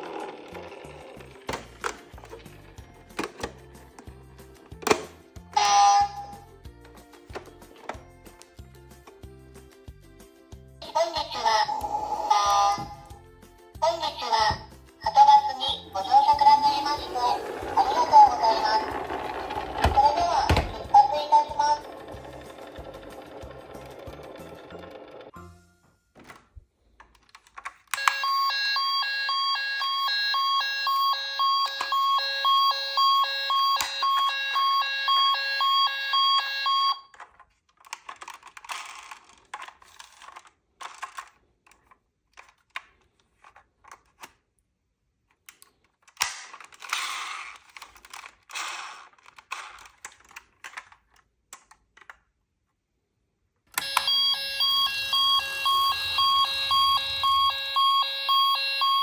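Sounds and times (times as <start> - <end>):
toy cars clicking and rattling: 0.0 - 2.4, 16.3 - 25.3, 37.1 - 44.5, 45.3 - 52.4
toy siren pulsing beep: 28.0 - 37.1, 53.8 - 59.0.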